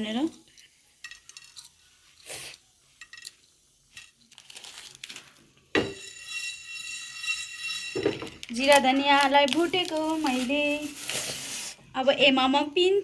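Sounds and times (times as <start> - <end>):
metal utensils clinking on a pan: 1.0 - 1.8, 5.8 - 9.6.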